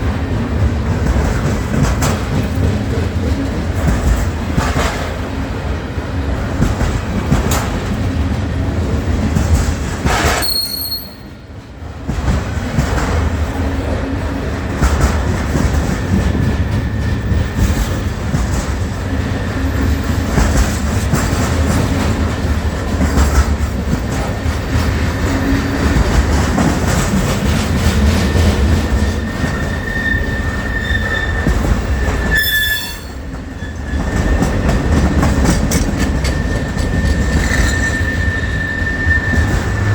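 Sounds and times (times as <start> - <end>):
train rumble and wheel clatter: 0.0 - 39.9
high wheel squeal: 10.4 - 11.3, 28.2 - 34.9, 36.2 - 39.9.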